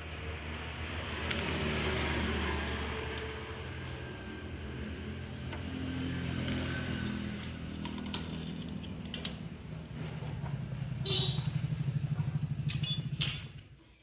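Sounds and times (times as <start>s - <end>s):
metal tools clinking: 6.4s - 9.6s, 12.6s - 14.0s.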